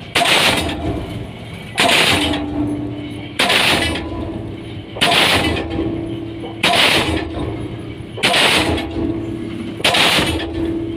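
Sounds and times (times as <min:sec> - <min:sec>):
pile hammer blows: 0:00.0 - 0:10.9
steady hum: 0:00.0 - 0:10.9.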